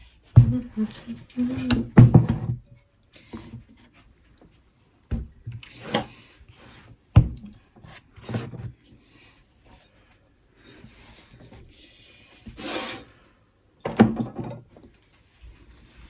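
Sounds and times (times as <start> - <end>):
soft rubbing of dough: 15.0 - 16.0.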